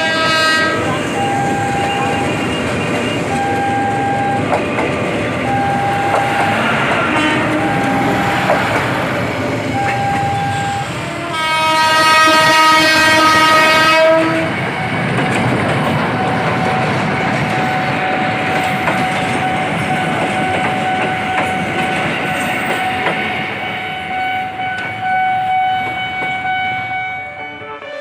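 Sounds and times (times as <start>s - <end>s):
train horn blast: 0.0s - 2.2s, 6.0s - 8.6s, 9.9s - 15.0s, 23.7s - 28.0s
train rumbling past: 0.0s - 28.0s
wheels clicking over rail joints: 15.0s - 23.5s.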